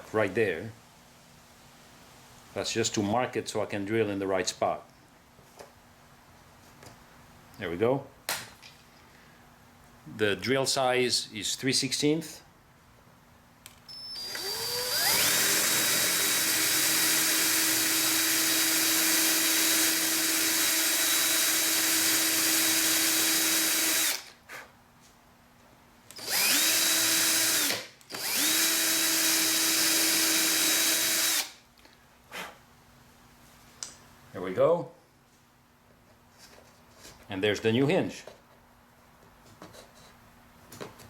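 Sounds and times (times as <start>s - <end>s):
electric drill boring wood: 13.9s - 24.3s, 26.2s - 31.6s.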